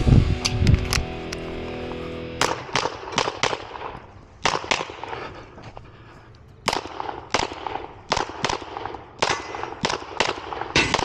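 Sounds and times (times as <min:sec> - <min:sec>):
handgun shots: 0:02.4 - 0:05.0.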